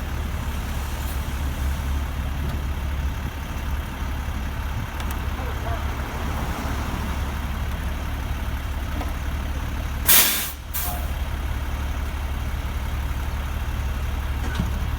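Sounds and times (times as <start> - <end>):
truck diesel engine rumbling: 0.0 - 14.9
air brake hiss: 10.1 - 11.1.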